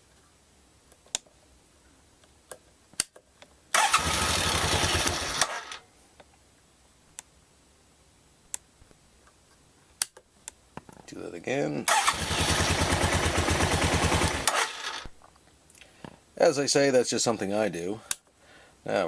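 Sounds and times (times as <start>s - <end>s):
motorcycle electric starter cranking: 3.8s - 5.8s, 11.9s - 15.1s.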